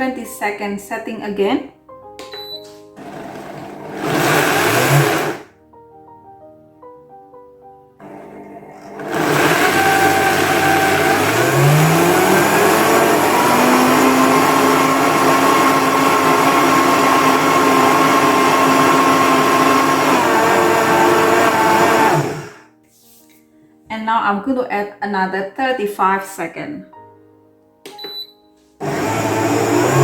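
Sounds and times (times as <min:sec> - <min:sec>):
blender grinding: 0:03.0 - 0:05.5, 0:08.0 - 0:22.6, 0:28.8 - 0:30.0.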